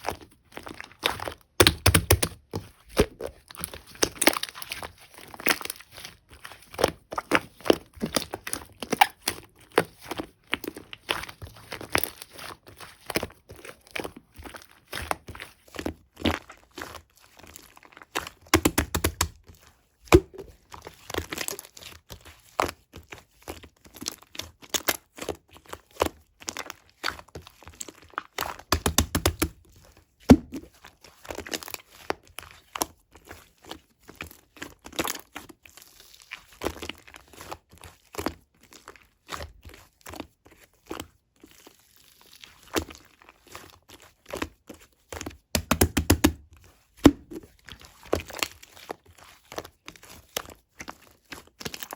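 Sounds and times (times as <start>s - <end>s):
slime squishing presses: 1.0s - 5.0s, 18.4s - 19.4s, 20.1s - 20.6s, 30.2s - 30.8s, 45.6s - 48.4s
sticky slime pops and clicks: 1.6s - 2.4s, 18.6s - 19.3s, 28.7s - 29.5s, 45.6s - 46.4s.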